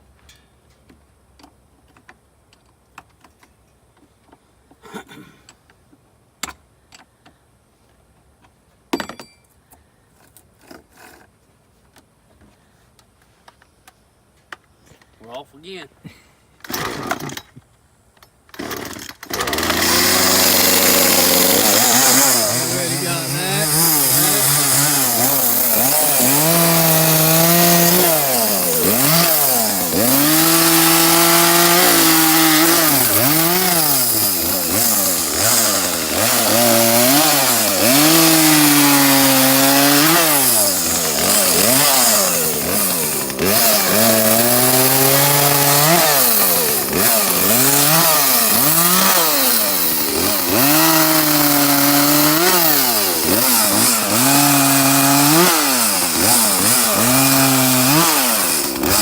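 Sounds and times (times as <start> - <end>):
chainsaw revving: 16.6 - 17.5, 18.5 - 59.0.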